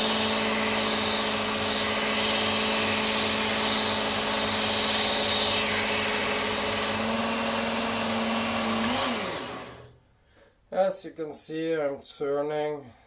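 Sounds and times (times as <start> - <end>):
belt sharpener grinding axe: 0.0 - 9.9
motor spinning down: 0.0 - 10.0.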